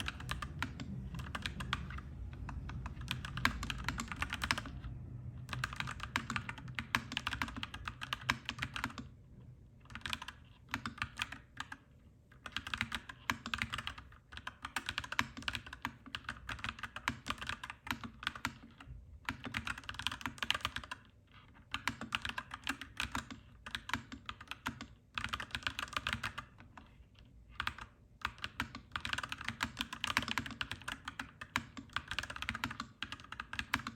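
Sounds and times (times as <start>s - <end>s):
low rumble: 0.0s - 6.2s
mechanical keyboard typing: 0.0s - 9.2s, 9.8s - 33.9s.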